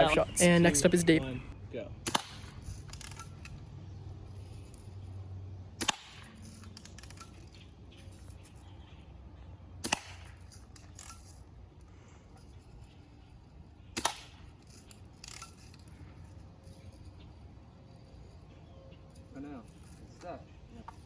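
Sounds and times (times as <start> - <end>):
bb gun shots: 2.0 - 3.1, 5.8 - 6.3, 9.8 - 10.4, 13.9 - 14.4.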